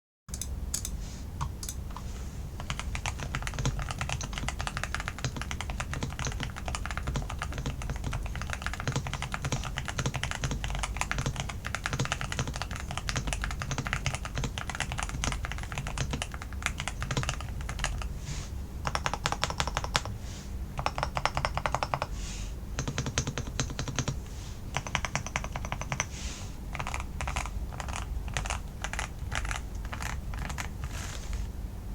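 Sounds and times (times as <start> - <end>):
mechanical keyboard typing: 2.6 - 18.1, 18.8 - 20.2, 20.8 - 22.1, 22.8 - 26.1, 26.7 - 30.9.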